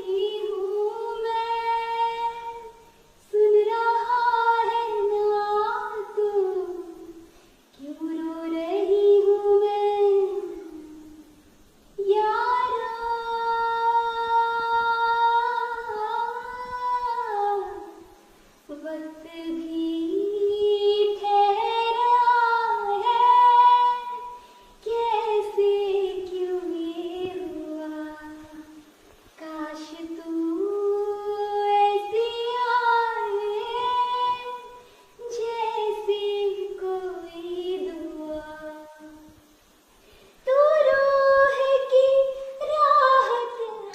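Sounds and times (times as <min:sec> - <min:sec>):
high voice singing: 0:40.5 - 0:43.9.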